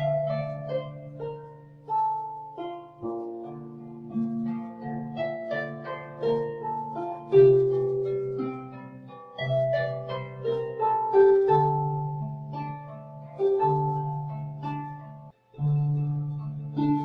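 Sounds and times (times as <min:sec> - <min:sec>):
gentle harp music: 0:00.0 - 0:17.0.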